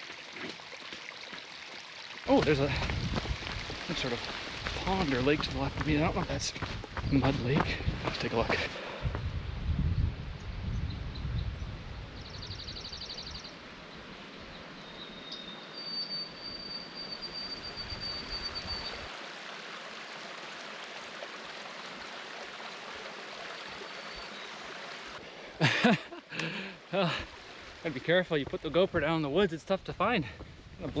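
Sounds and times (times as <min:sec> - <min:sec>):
water-like ambient hiss: 0:00.0 - 0:06.4, 0:17.0 - 0:31.0
songbird calls: 0:12.2 - 0:19.1.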